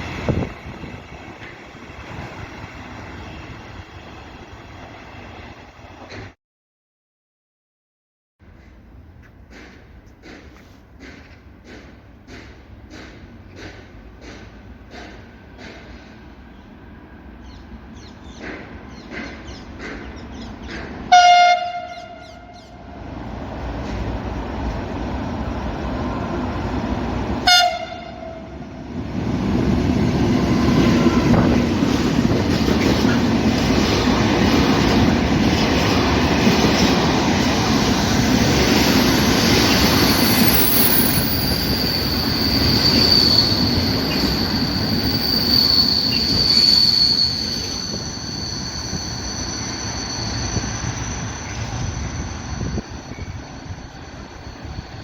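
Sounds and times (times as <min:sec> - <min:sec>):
train wheels rumbling: 0:08.4 - 0:55.0
train horn blast: 0:21.1 - 0:22.8, 0:27.4 - 0:28.6
wheels squealing on rails: 0:29.7 - 0:55.0.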